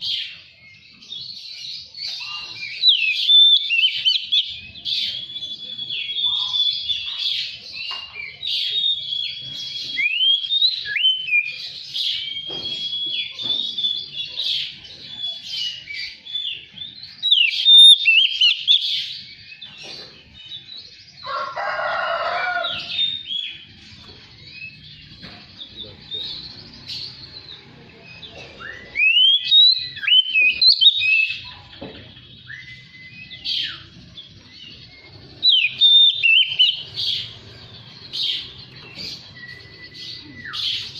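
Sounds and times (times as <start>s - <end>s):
bird singing whistles and chirps: 0.0s - 21.1s, 22.6s - 31.6s, 32.2s - 40.9s
harsh grating bird call: 34.9s - 40.9s.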